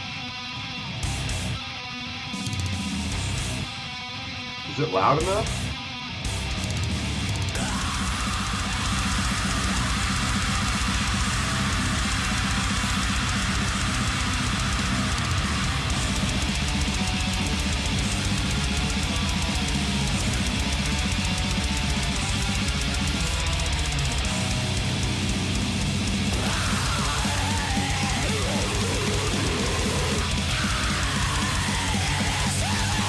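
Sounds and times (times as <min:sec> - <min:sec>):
distorted electric guitars: 0:00.0 - 0:33.0
fast dense drumming: 0:06.7 - 0:33.0.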